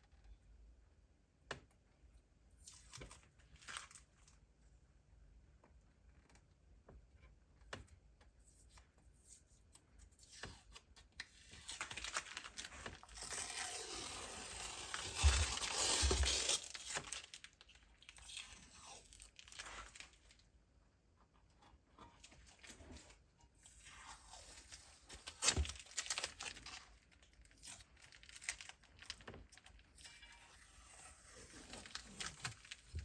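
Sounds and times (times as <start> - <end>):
rough tearing crinkling: 2.6 - 4.4, 10.7 - 20.4, 22.3 - 33.0.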